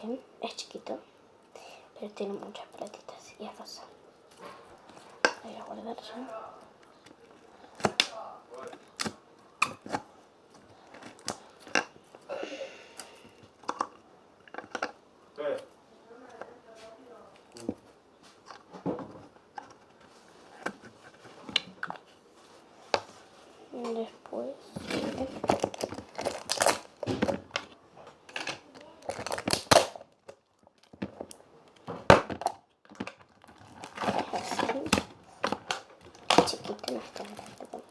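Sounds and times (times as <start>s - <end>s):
rustling: 2.2s - 37.9s
slime crackling and squishing: 33.2s - 37.9s.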